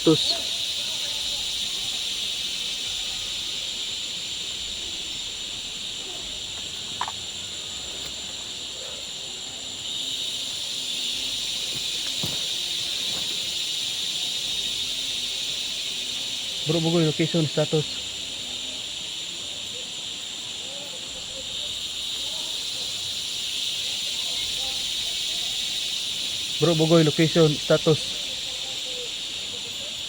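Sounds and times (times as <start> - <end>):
crickets chirring: 0.0 - 30.0
faint clicks: 6.5 - 7.2.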